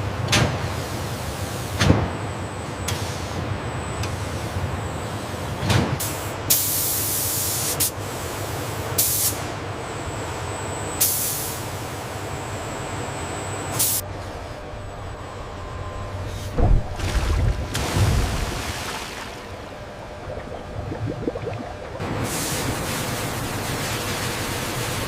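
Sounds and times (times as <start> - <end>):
machinery humming: 8.0 - 25.0
machine thump: 16.5 - 18.5.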